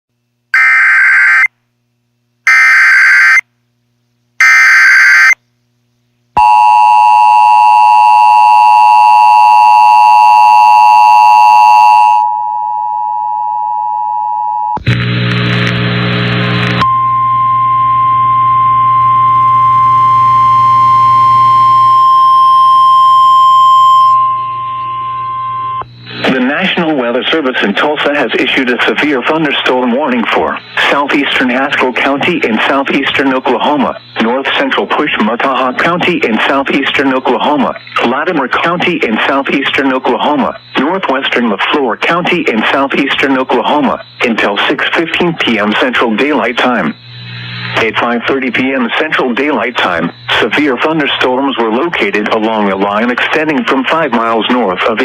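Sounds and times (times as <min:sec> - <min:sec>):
digital header data bursts: 0:00.6 - 0:01.5
steady warning tone: 0:00.6 - 0:01.5, 0:02.5 - 0:03.4, 0:04.4 - 0:05.4, 0:16.8 - 0:53.1.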